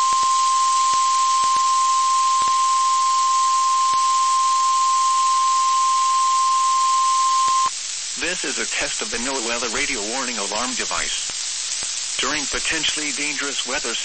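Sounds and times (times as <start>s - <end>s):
steady high alarm beep: 0.0s - 7.7s
radio static hiss: 0.0s - 14.0s.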